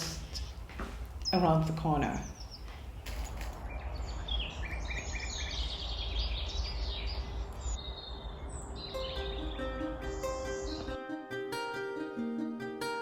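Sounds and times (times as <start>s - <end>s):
songbirds singing and chirping: 0.0s - 11.0s
plucked-string tune: 8.9s - 13.0s.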